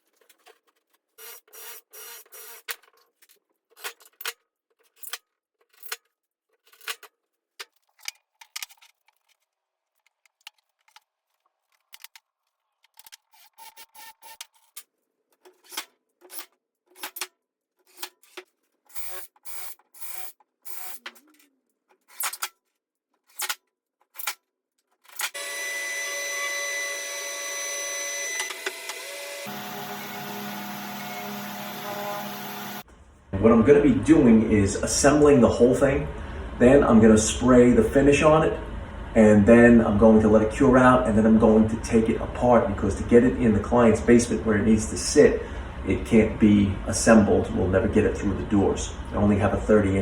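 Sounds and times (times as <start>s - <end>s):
power tool running: 1.2s - 2.7s, 25.4s - 32.9s.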